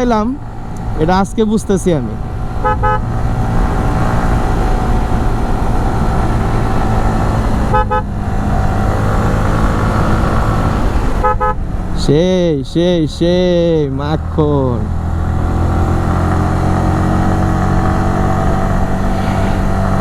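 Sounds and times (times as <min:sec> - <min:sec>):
horn double beep: 0:02.6 - 0:03.1, 0:07.7 - 0:08.1, 0:11.2 - 0:11.6.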